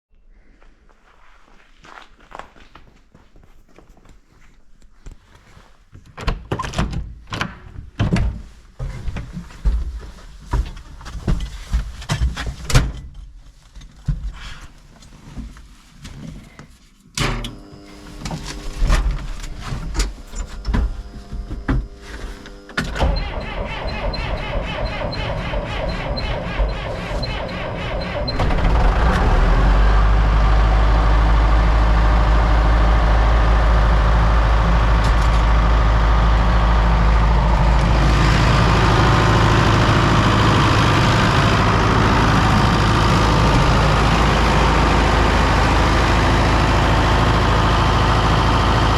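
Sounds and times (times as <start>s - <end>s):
tractor engine running: 17.7s - 48.9s
starter cranking diesel engine: 22.5s - 48.9s.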